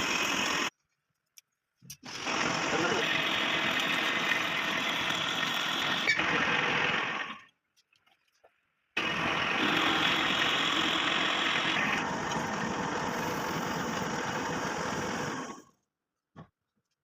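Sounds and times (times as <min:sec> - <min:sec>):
lathe running: 0:02.1 - 0:07.4, 0:09.0 - 0:15.6.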